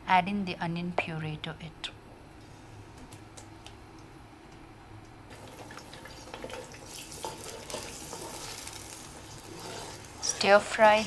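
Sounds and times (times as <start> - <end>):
oil sizzling and spattering: 5.3 - 11.0.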